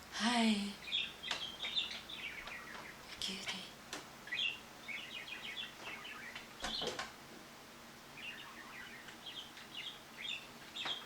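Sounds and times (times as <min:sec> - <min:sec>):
budgerigars chattering: 0:00.8 - 0:03.0, 0:04.3 - 0:06.9, 0:08.2 - 0:11.0.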